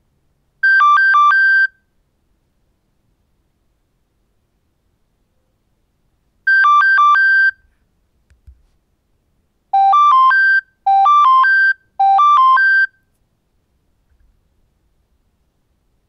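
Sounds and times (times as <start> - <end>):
phone alarm beeps: 0.6 - 1.8, 6.5 - 7.6, 9.8 - 13.0.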